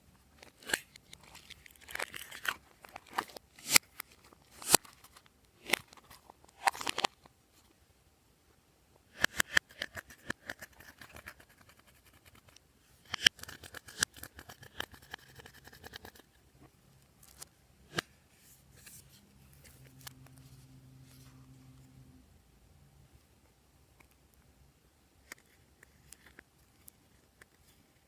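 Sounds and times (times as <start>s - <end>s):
faint low hum: 0.0s - 28.0s.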